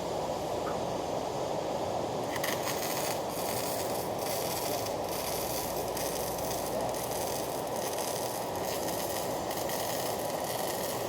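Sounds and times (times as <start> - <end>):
welding arc crackling: 2.2 - 11.0.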